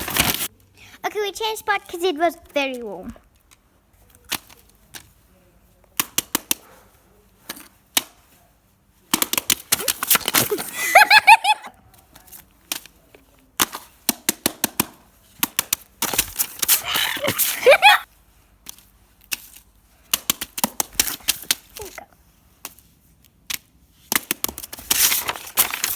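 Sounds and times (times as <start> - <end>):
fidget toys clicking and snapping: 2.7 - 5.1, 5.9 - 6.6, 9.1 - 10.6, 12.2 - 17.7, 18.6 - 22.0, 23.5 - 25.9
burst of laughter: 9.8 - 11.7, 16.8 - 18.0.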